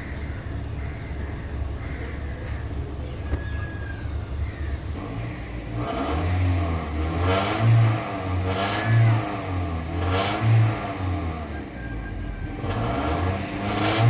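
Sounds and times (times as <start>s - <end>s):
car engine revving: 4.8s - 14.0s.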